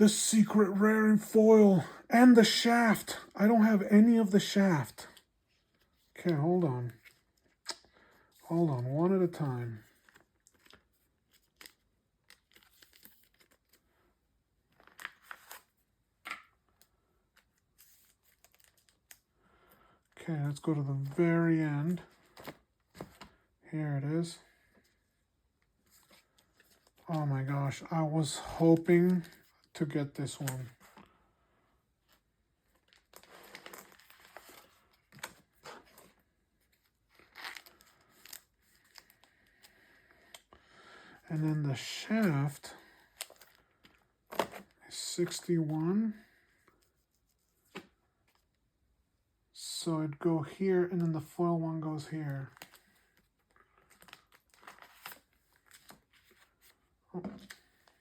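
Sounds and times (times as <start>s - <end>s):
trading cards rustling: 1.2s - 13.9s, 14.6s - 19.3s, 32.0s - 40.5s, 41.7s - 48.5s, 52.2s - 58.0s
plastic crinkling and rustling: 9.3s - 13.8s, 32.1s - 40.5s, 52.4s - 58.0s.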